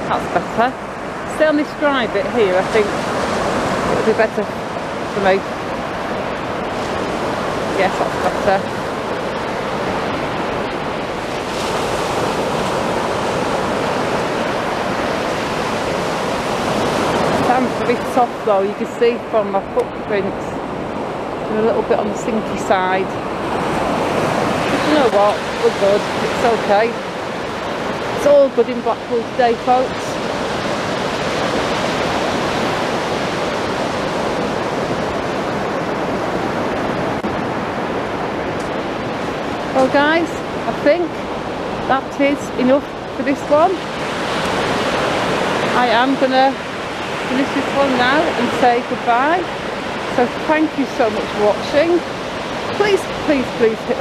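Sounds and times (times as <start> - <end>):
waves breaking on a beach: 0.0 - 54.0.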